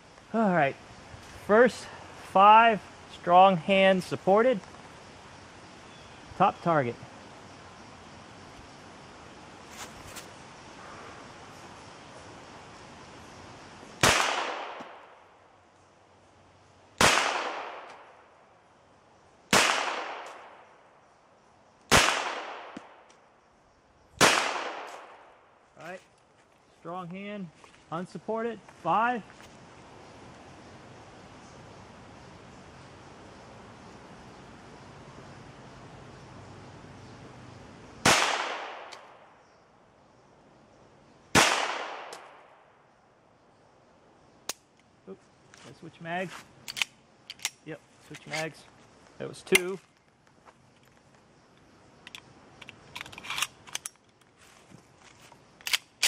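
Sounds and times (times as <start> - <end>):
pistol shots echoing: 14.0 - 15.0, 17.0 - 17.9, 19.5 - 20.4, 41.4 - 42.2.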